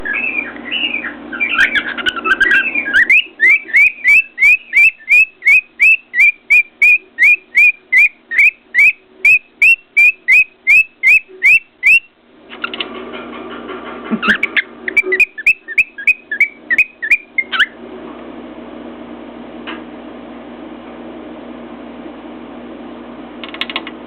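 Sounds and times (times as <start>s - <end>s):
cockatiel chirping: 0.0s - 12.1s, 14.2s - 17.8s
cockatiel whistling rising notes: 14.3s - 17.8s.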